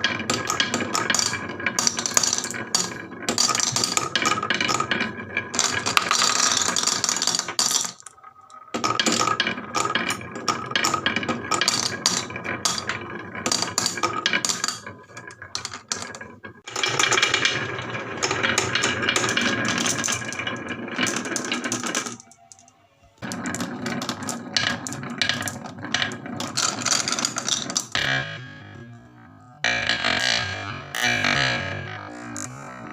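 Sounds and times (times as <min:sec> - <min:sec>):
marbles rattling down wooden run: 0:00.0 - 0:30.4.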